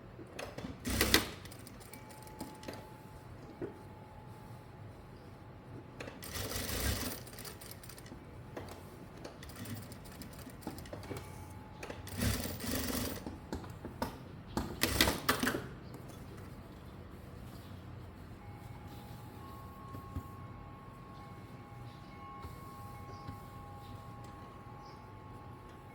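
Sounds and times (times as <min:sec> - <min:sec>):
sewing machine stitching: 0:00.6 - 0:02.3, 0:06.2 - 0:08.1, 0:09.4 - 0:11.0, 0:12.1 - 0:13.3.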